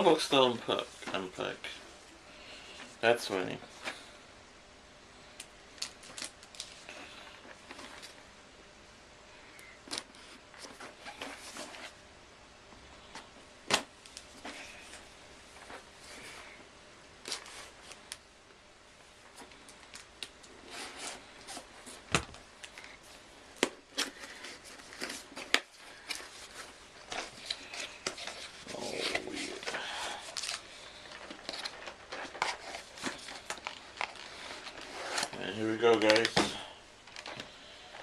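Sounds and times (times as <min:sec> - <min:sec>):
rustling of packed contents: 0:19.2 - 0:38.0.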